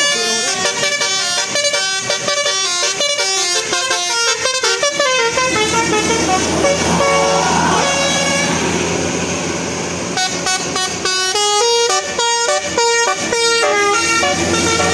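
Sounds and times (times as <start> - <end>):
bus engine rumble: 0.0 - 14.9.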